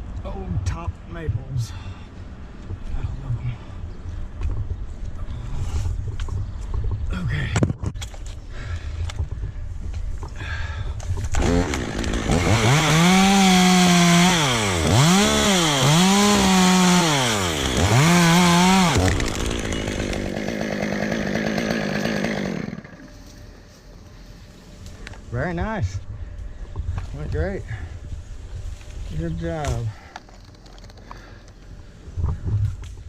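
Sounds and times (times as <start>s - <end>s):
chainsaw cutting wood: 11.3s - 23.3s.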